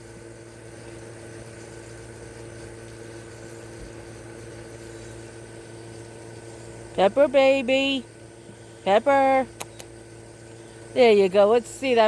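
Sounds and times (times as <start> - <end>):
machine humming with steady tones: 0.0 - 12.0.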